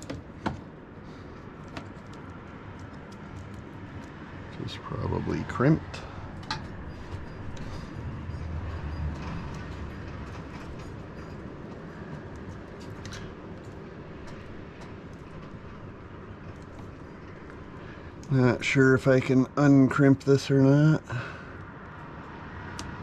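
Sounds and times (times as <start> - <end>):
clicks and rustles of wires: 0.0 - 4.6, 6.2 - 18.4
low rumbling background noise: 0.0 - 23.0.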